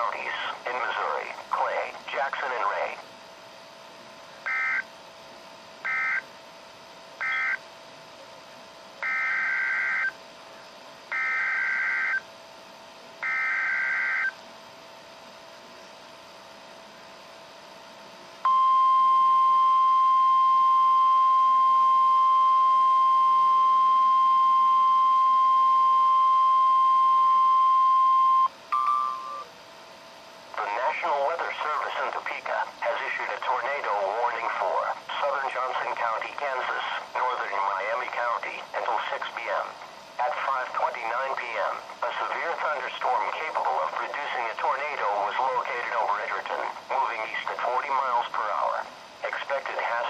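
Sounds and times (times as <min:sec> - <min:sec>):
buzzy two-pitch data tone: 0:04.4 - 0:04.9, 0:05.8 - 0:06.2, 0:07.2 - 0:07.6, 0:09.0 - 0:10.2, 0:11.1 - 0:12.2, 0:13.2 - 0:14.4
steady warning alarm tone: 0:04.4 - 0:05.0, 0:05.8 - 0:06.3, 0:07.2 - 0:07.7, 0:09.0 - 0:10.2, 0:11.0 - 0:12.3, 0:13.2 - 0:14.4, 0:18.4 - 0:29.6.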